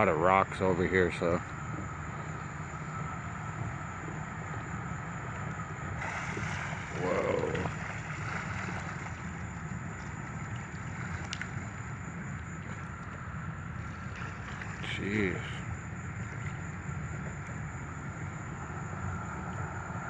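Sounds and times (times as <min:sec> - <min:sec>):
outdoor noise hiss: 0:00.0 - 0:20.0
wind rumble on microphone: 0:00.0 - 0:20.0
man exclaiming: 0:07.0 - 0:07.7.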